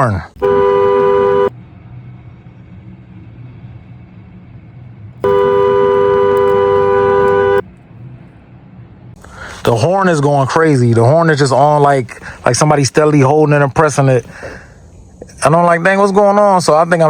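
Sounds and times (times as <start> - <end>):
low steady hum: 0.0 - 17.0
dual-note car horn blaring: 0.4 - 1.6, 5.2 - 7.7.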